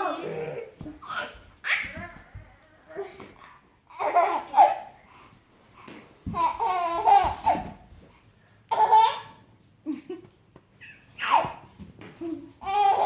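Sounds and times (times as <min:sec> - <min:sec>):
baby laughing: 0:01.0 - 0:02.2, 0:03.9 - 0:04.9, 0:06.3 - 0:07.8, 0:08.7 - 0:09.4, 0:12.2 - 0:13.0.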